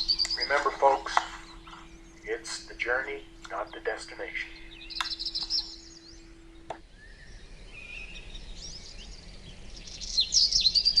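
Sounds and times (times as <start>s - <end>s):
faint steady hum: 0.0s - 11.0s
wild birds singing and chirping: 0.0s - 11.0s.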